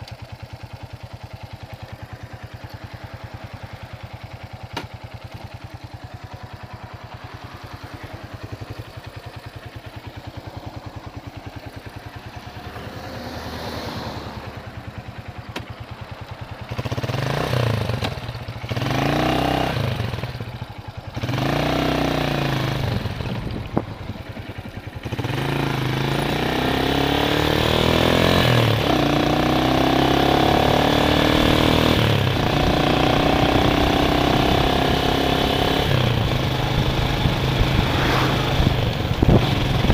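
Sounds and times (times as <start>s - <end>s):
vehicle engine accelerating: 11.8s - 24.3s, 24.9s - 39.9s
rush of air noise: 36.7s - 39.9s.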